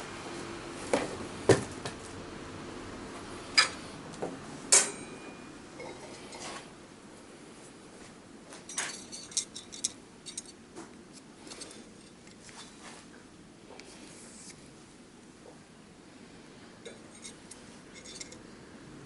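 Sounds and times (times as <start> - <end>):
metal pieces clinking: 8.7 - 10.6, 17.1 - 18.4.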